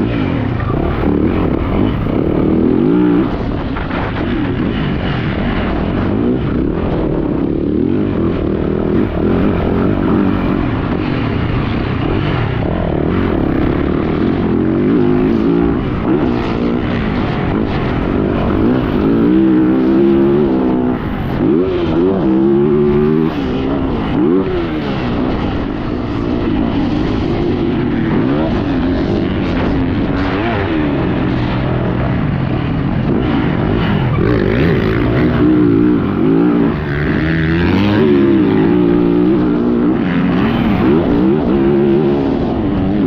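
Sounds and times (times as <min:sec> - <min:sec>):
motocross bike engine revving: 0:00.0 - 0:43.0.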